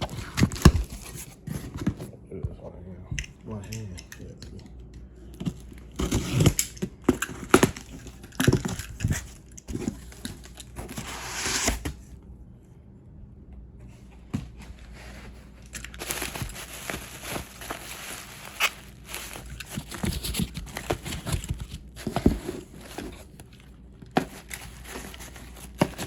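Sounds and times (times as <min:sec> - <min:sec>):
packaging crinkling and tearing: 0:05.7 - 0:11.9, 0:15.6 - 0:26.0
packaging rustling: 0:15.1 - 0:26.0.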